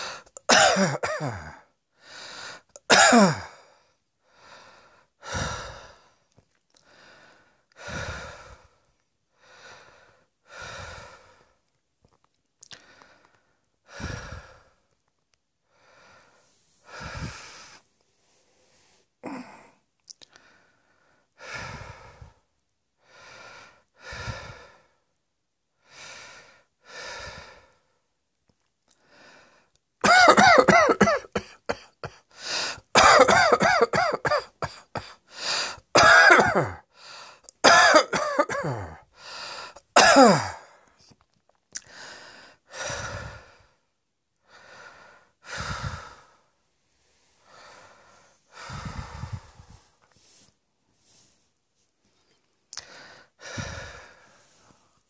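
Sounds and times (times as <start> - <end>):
person coughing: 0.4 - 1.6, 2.8 - 3.6, 30.0 - 32.2, 32.9 - 35.2, 36.0 - 36.8, 37.6 - 39.0, 40.0 - 40.7.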